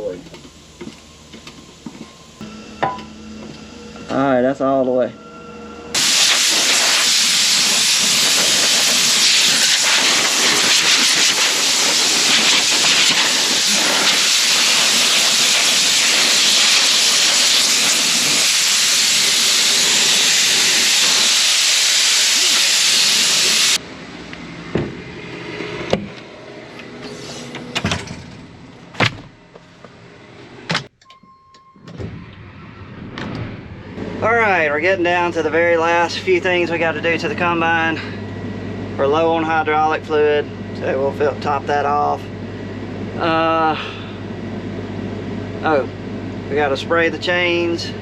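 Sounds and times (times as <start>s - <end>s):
high-pressure spray hissing: 6.0s - 23.8s.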